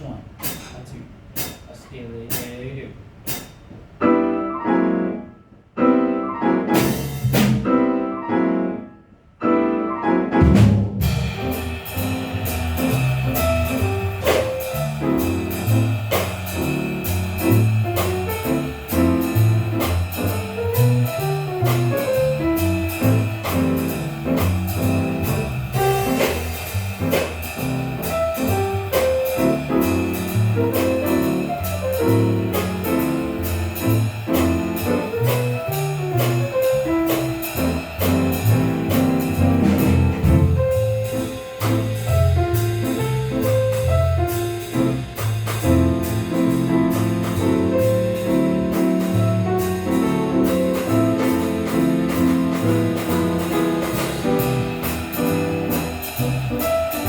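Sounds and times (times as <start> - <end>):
bass and drums swinging groove: 0.0 - 4.0, 6.7 - 7.8, 10.4 - 57.0
piano chords: 3.3 - 57.0
cymbal hits: 11.0 - 42.4, 53.0 - 57.0.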